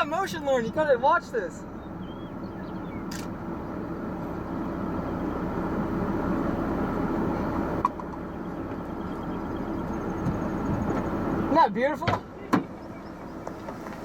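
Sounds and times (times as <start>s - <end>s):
car hum and rumble: 0.0s - 14.0s
sharp click: 3.1s - 3.3s.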